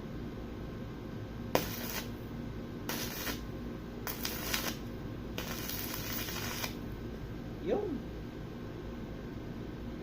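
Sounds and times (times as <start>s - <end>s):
welding arc crackling: 1.5s - 2.2s, 2.9s - 6.9s.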